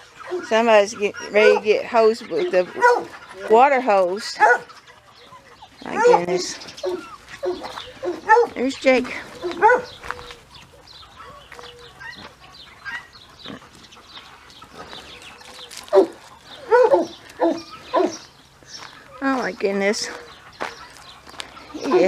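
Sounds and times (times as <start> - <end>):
dog whining and yelping: 9.4 - 10.4.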